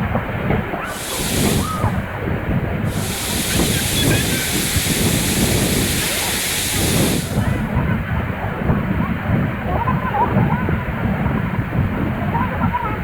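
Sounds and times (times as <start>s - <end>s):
wind buffeting microphone: 0.0s - 13.0s
waterfall roaring: 0.9s - 2.0s, 2.9s - 7.8s.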